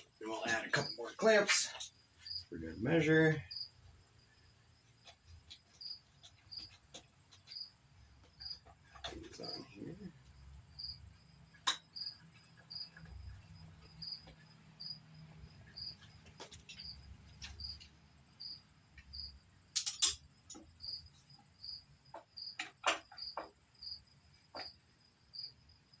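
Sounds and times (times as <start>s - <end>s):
cricket chirping: 0.0s - 26.0s
bar clamps clicking and knocking: 19.7s - 20.7s, 22.2s - 23.5s.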